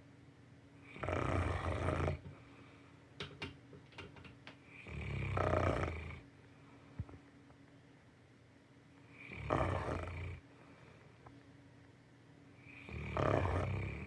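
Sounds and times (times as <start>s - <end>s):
puppy snoring: 0.8s - 2.2s, 4.7s - 6.3s, 9.1s - 10.4s, 12.6s - 14.0s.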